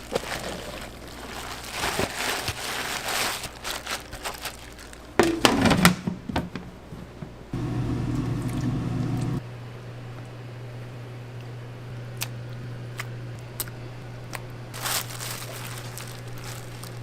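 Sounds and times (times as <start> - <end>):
rustling and clattering of food preparation: 0.0 - 7.5, 14.7 - 17.0
low machine hum: 6.6 - 17.0.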